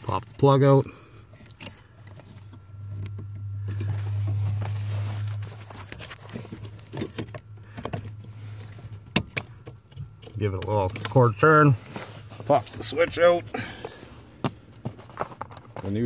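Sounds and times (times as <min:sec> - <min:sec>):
low steady hum: 0:00.0 - 0:16.0
small clicks and handling noise: 0:01.3 - 0:04.0.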